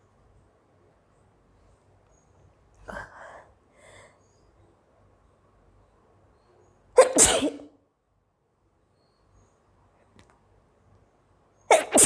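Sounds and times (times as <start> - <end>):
woman sneezing: 7.0 - 7.7, 11.7 - 12.0.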